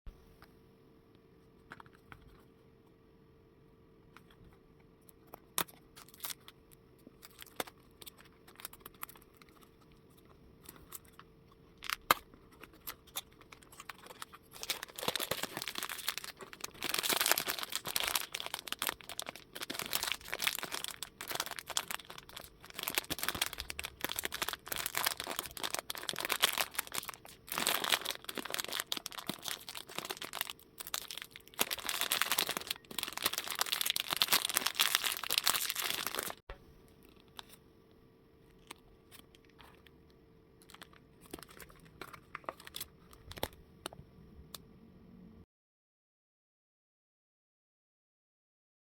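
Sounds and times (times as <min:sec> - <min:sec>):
wrapper crinkling and tearing: 0:05.6 - 0:06.6, 0:07.2 - 0:11.2, 0:11.8 - 0:36.4, 0:40.6 - 0:43.6.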